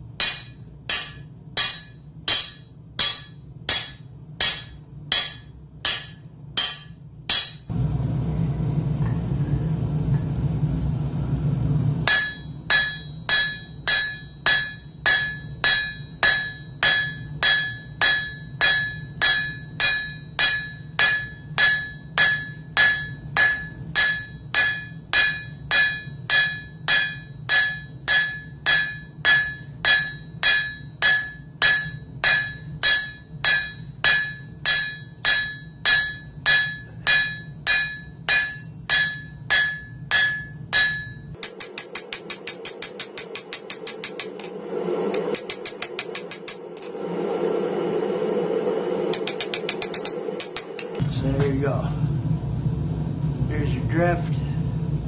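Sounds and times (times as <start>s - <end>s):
low rumble: 0.0s - 18.0s, 42.4s - 55.0s
hammer ringing on anvil: 0.2s - 7.7s, 12.0s - 46.9s, 49.1s - 51.0s.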